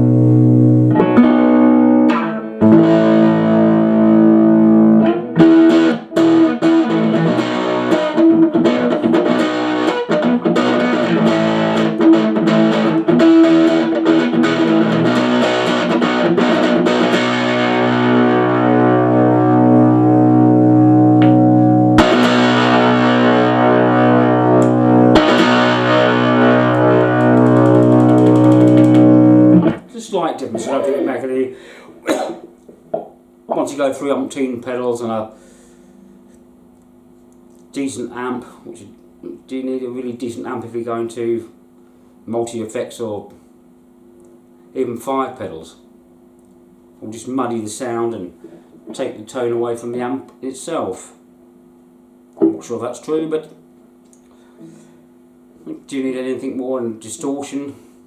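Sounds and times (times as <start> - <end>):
electric guitar strummed chords: 0.0 - 29.9
picked guitar notes: 0.0 - 29.9, 30.5 - 31.2.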